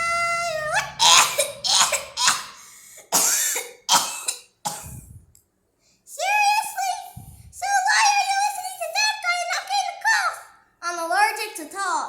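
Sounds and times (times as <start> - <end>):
person coughing: 3.2 - 5.2.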